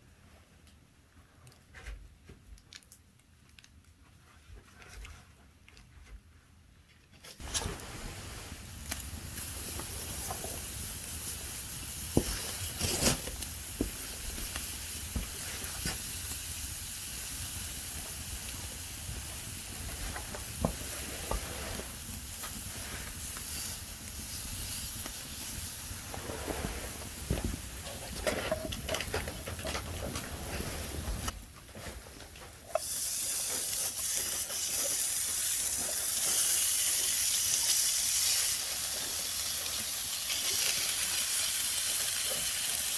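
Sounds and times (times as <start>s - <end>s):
campfire sizzling and hissing: 7.4s - 42.9s
crackling pops: 8.6s - 38.8s.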